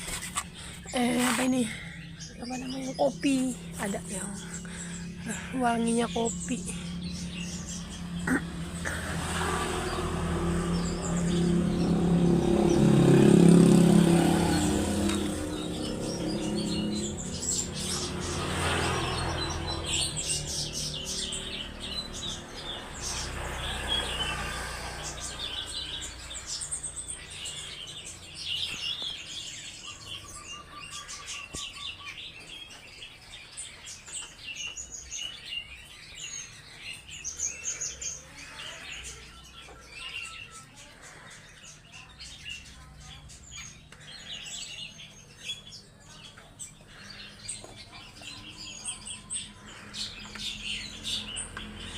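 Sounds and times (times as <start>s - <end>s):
small birds chirping: 0.0s - 51.9s
bird trill: 14.4s - 51.9s.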